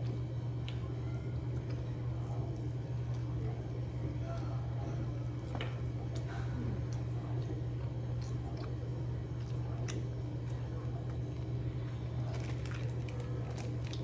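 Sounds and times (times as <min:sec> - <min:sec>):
low electrical hum: 0:00.0 - 0:14.0
person chewing food: 0:05.2 - 0:14.0.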